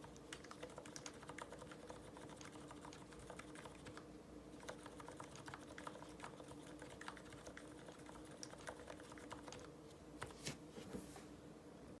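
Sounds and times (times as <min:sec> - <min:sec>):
soft mechanical keyboard typing: 0:00.0 - 0:10.3.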